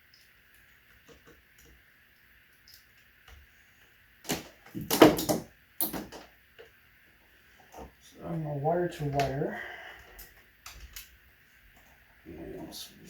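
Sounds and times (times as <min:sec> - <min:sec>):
small clicks: 0:00.0 - 0:03.4.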